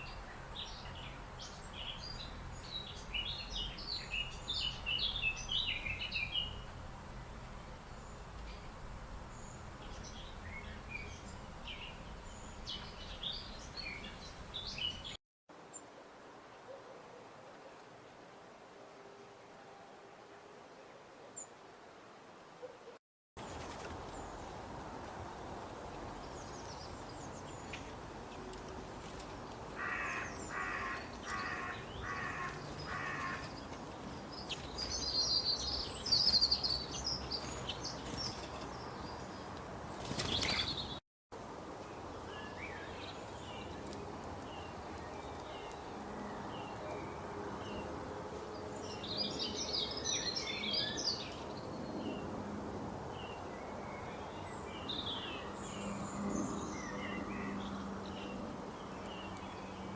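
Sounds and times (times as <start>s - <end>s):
songbirds twittering: 0.0s - 15.8s, 23.4s - 41.0s, 41.7s - 52.3s, 53.2s - 59.9s
steady outdoor hiss: 0.0s - 59.9s
bird harsh calls: 29.8s - 33.6s.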